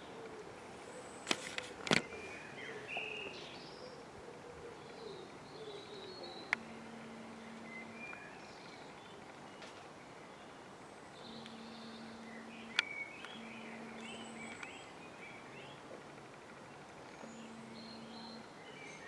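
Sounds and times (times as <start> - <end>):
small birds chirping: 0.0 - 19.0
faint low drone: 2.1 - 19.0
short steady low tone: 6.5 - 8.2, 11.2 - 14.8, 17.2 - 18.6.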